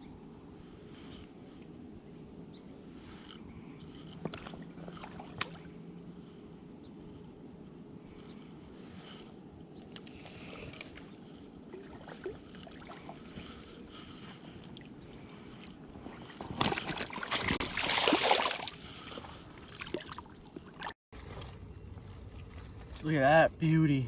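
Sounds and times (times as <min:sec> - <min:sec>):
water lapping: 0:03.6 - 0:06.4, 0:10.2 - 0:24.0
fish splashing: 0:16.2 - 0:21.3.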